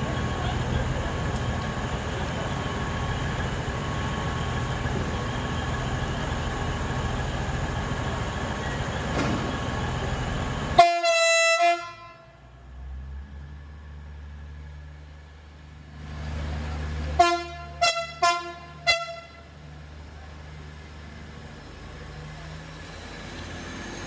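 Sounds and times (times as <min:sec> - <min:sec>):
train rumbling: 0:00.0 - 0:24.0
train horn blast: 0:10.8 - 0:12.4, 0:17.2 - 0:19.5.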